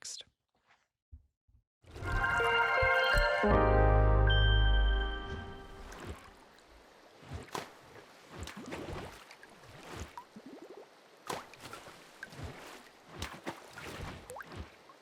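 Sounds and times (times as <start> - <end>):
water splashing and dripping: 5.6 - 15.0.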